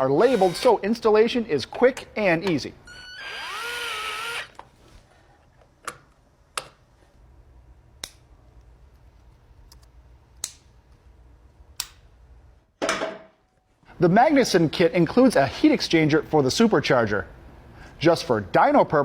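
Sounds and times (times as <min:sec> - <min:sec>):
power tool whirring: 0:00.0 - 0:00.8, 0:02.9 - 0:04.6.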